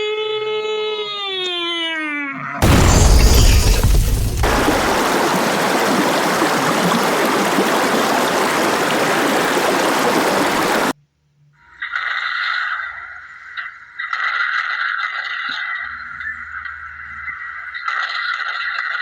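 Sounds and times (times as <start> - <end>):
loud rushing noise: 2.6 - 10.9.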